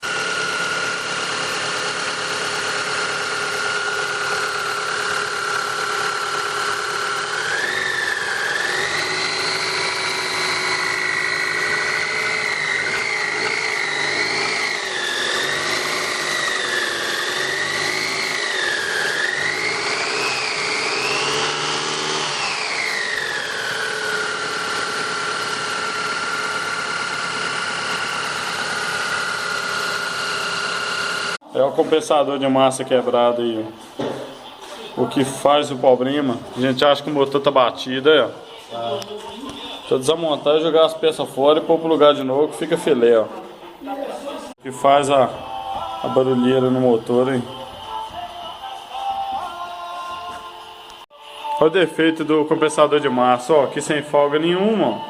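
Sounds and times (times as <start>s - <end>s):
car engine whining and revving: 0.0s - 31.4s.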